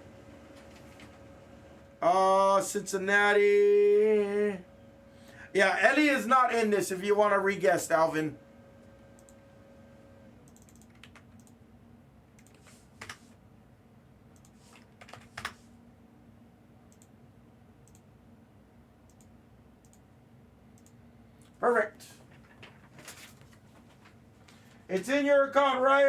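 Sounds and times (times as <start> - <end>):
computer keyboard typing: 10.5 - 11.6, 12.4 - 13.3, 14.4 - 15.6.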